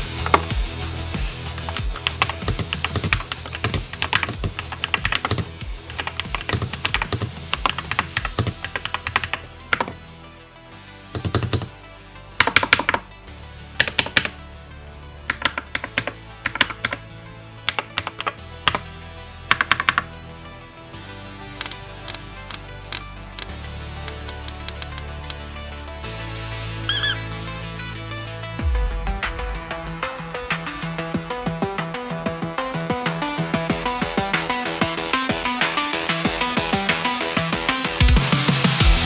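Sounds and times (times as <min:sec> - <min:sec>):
background music: 0:00.0 - 0:39.0
keyboard key clacks: 0:11.2 - 0:11.7, 0:21.6 - 0:23.0, 0:24.1 - 0:25.0.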